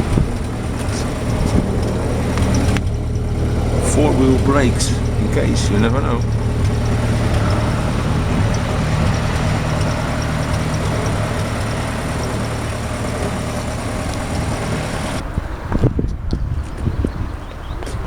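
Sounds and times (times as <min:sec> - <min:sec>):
car engine idling: 0:00.0 - 0:17.5.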